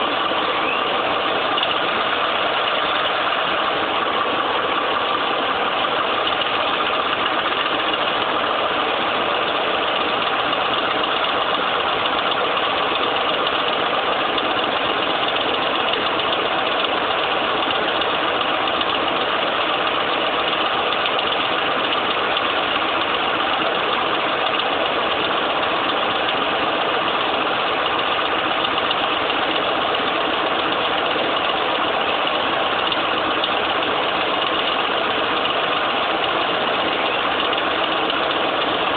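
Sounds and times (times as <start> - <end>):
engine running with ticking clatter: 0.0 - 38.9.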